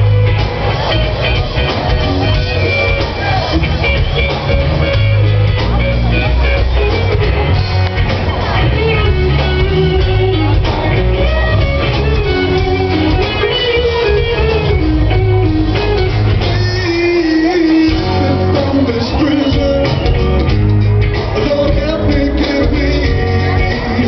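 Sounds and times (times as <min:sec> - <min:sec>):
rock band playing: 0:00.0 - 0:24.0
person singing: 0:16.3 - 0:20.5, 0:21.2 - 0:24.0.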